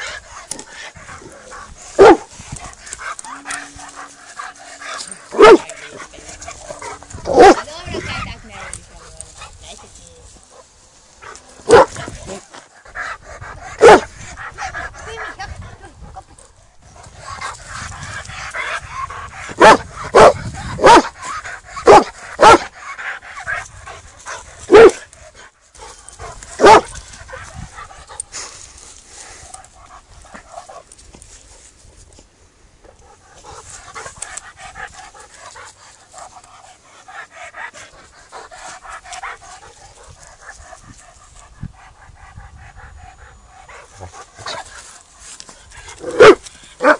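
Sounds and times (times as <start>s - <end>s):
dog barking: 2.0s - 2.3s, 5.3s - 5.7s, 7.3s - 7.7s, 11.6s - 12.0s, 13.8s - 14.1s, 19.6s - 21.1s, 21.8s - 22.7s, 24.7s - 25.0s, 26.6s - 26.9s, 46.0s - 46.9s.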